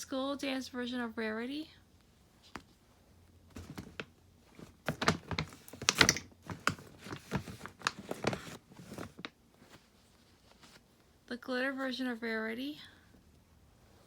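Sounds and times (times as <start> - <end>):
plastic toy figures clicking: 5.8 - 6.7.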